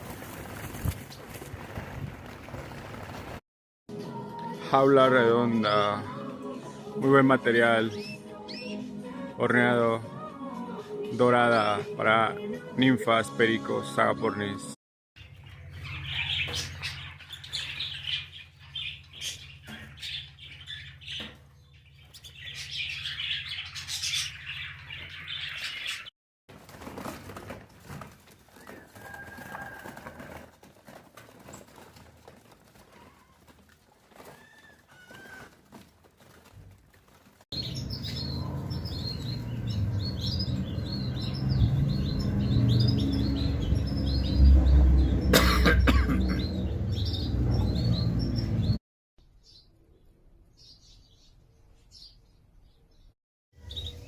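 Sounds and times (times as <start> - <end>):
cage birds chirping: 4.7 - 9.9, 15.2 - 26.1, 27.9 - 54.0.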